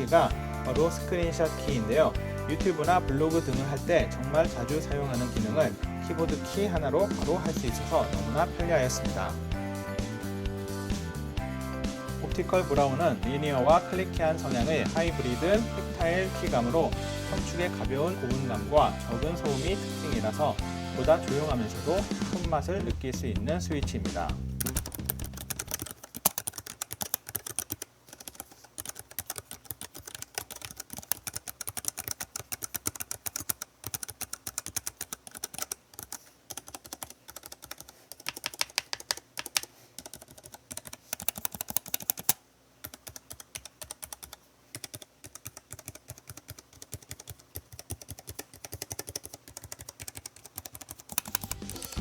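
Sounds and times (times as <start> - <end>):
mechanical keyboard key clicks: 24.6 - 52.0.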